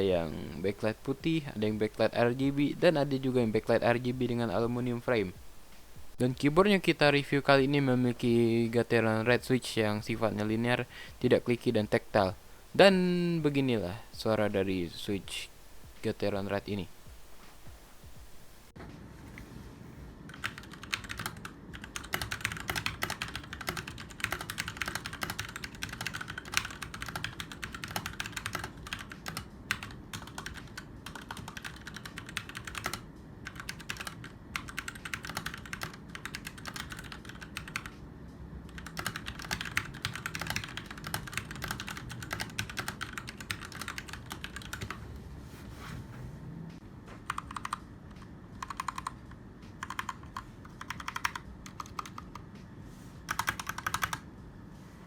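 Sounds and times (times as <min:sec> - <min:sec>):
typing on mechanical keyboard: 0:20.3 - 0:38.0, 0:38.7 - 0:45.0, 0:47.3 - 0:52.5, 0:53.3 - 0:54.2.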